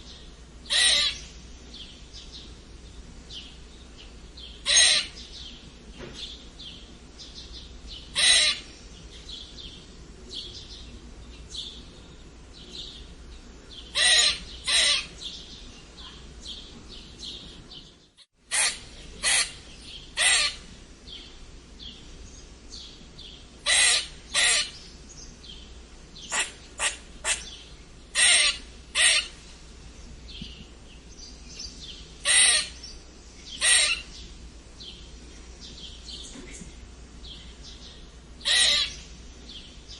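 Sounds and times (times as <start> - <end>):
squirrel squeaking: 0.7 - 1.2, 4.6 - 5.2, 8.1 - 8.7, 13.9 - 15.2, 18.5 - 19.6, 20.2 - 20.6, 23.7 - 24.8, 26.3 - 29.4, 32.2 - 32.8, 33.6 - 34.1, 38.4 - 39.0.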